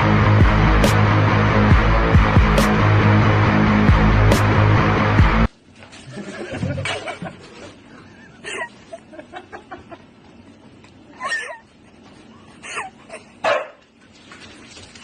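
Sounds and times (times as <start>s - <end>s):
dog yipping: 11.2s - 11.6s, 13.4s - 13.8s.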